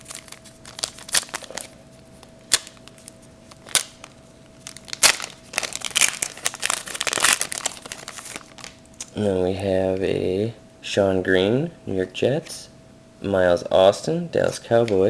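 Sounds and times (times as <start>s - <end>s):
wrappers crinkling and rustling: 0.0s - 9.1s.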